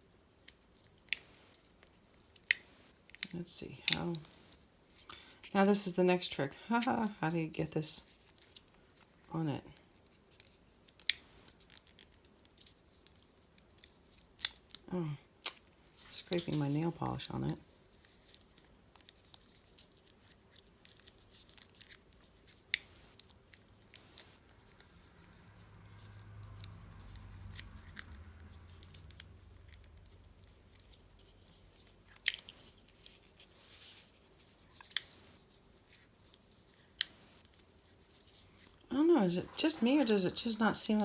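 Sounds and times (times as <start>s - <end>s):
faint low rumble: 24.0s - 35.4s.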